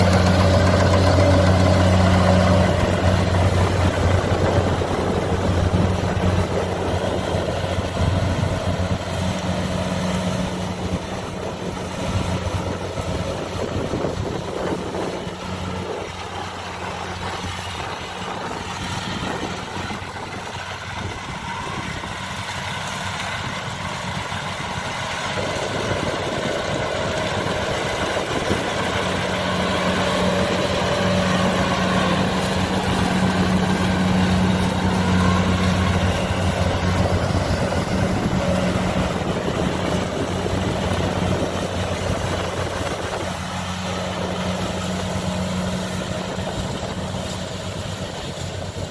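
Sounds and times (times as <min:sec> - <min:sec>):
diesel engine humming: 0:00.0 - 0:48.9.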